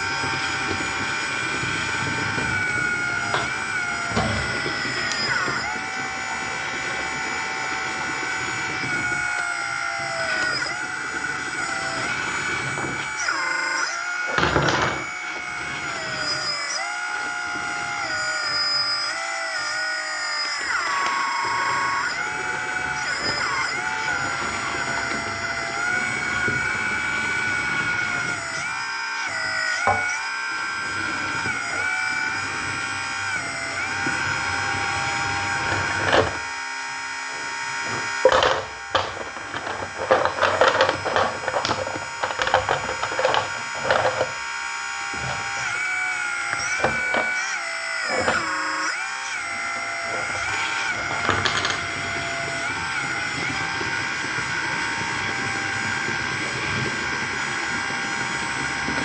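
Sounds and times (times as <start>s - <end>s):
irregular clicking and scraping: 0.0s - 13.4s, 33.8s - 36.5s, 37.7s - 48.6s
electric motors whining: 0.0s - 59.0s.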